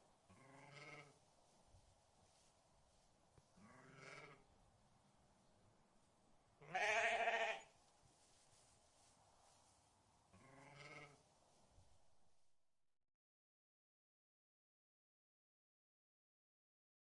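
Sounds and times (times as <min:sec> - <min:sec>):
rams bleating: 0:00.3 - 0:01.2, 0:03.6 - 0:04.4, 0:06.6 - 0:07.7, 0:10.4 - 0:11.2.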